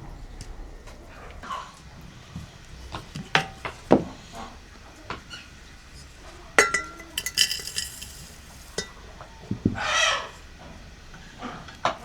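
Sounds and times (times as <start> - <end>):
glasses and dishes clinking: 5.8 - 9.3.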